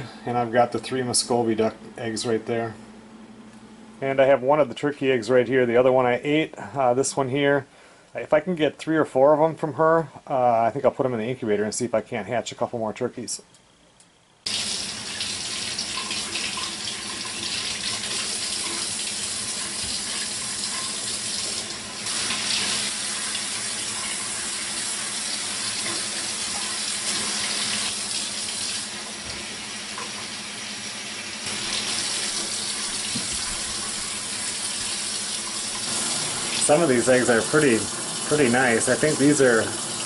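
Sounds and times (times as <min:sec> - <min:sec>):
tap water running into sink: 0:14.5 - 0:40.0.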